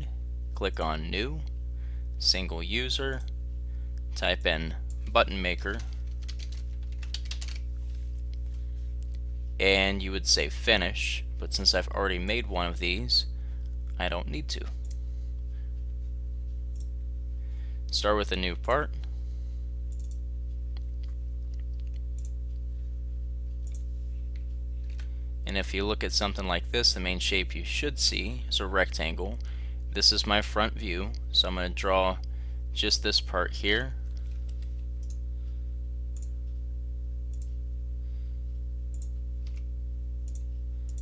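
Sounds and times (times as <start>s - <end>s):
low electrical hum: 0.0s - 41.0s
computer mouse clicks: 19.9s - 20.2s, 23.6s - 23.9s, 38.9s - 41.0s.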